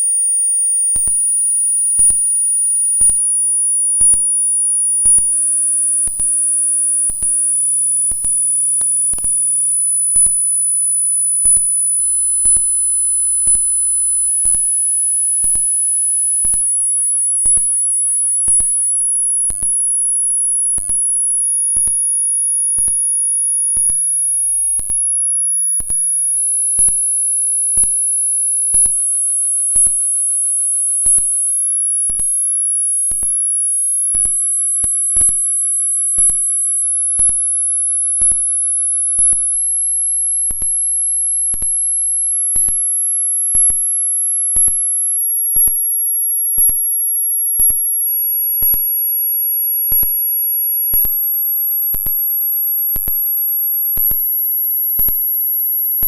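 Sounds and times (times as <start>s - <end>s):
high-pitched sine test tone: 0.0s - 56.0s
faint tick: 32.1s - 32.3s, 37.2s - 37.5s, 39.2s - 39.5s, 40.5s - 40.8s, 41.5s - 41.8s, 42.6s - 42.8s, 43.5s - 43.8s, 47.6s - 47.8s, 48.6s - 48.9s, 49.9s - 50.2s, 50.9s - 51.2s, 51.9s - 52.2s, 53.0s - 53.2s, 54.0s - 54.2s, 55.0s - 55.2s.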